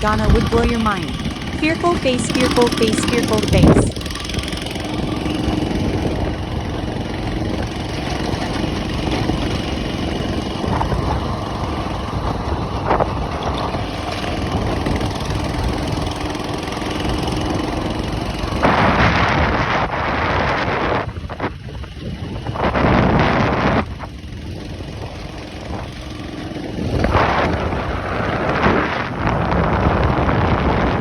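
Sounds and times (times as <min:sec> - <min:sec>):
steady motor drone: 0:00.0 - 0:31.0
wind on microphone: 0:18.1 - 0:26.0, 0:26.6 - 0:31.0.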